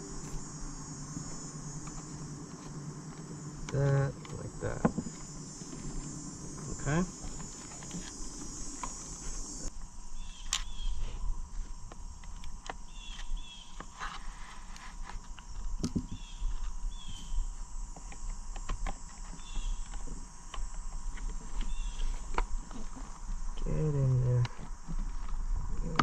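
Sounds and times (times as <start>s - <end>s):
insect chirring: 0.0s - 26.0s.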